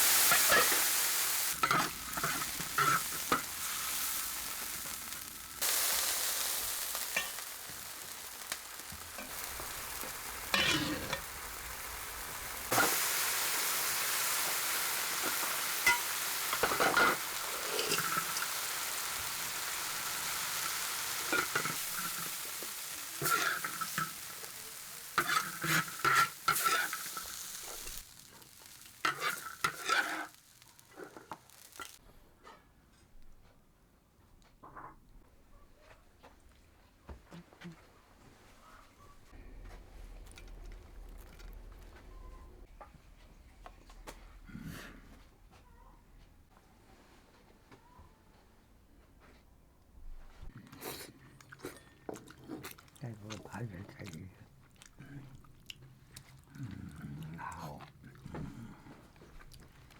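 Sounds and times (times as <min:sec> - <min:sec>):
food sizzling in oil: 0:00.0 - 0:32.0, 0:39.7 - 0:42.6
utensil scraping in a pan: 0:00.0 - 0:32.6.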